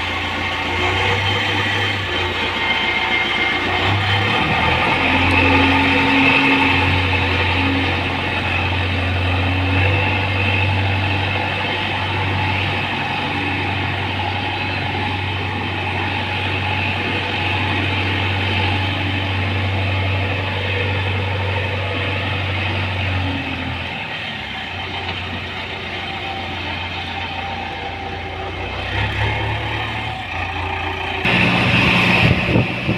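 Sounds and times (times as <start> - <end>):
diesel engine droning: 0.0 - 32.9.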